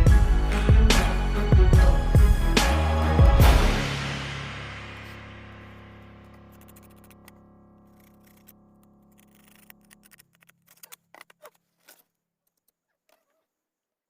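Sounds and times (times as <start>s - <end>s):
background music: 0.0s - 10.4s.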